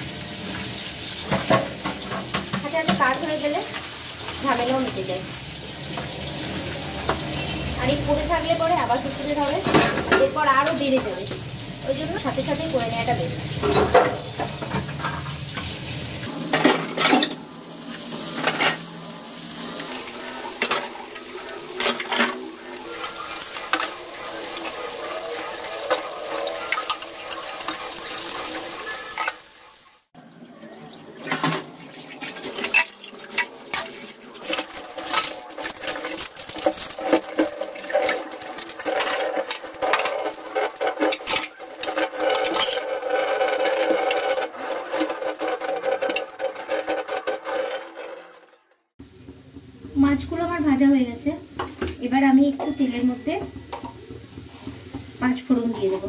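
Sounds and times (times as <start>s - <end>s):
utensils and pots clattering: 0.0s - 29.8s, 30.8s - 48.7s, 51.5s - 56.0s
fish frying in oil: 0.0s - 48.3s
water running: 0.0s - 56.0s.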